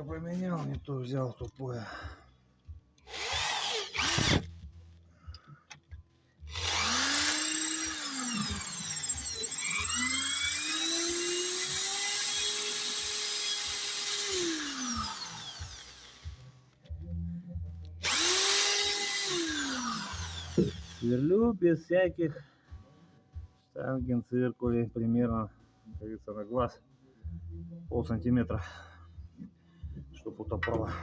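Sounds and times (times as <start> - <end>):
electric drill whining: 3.0 - 4.6, 6.5 - 16.4, 18.0 - 21.3.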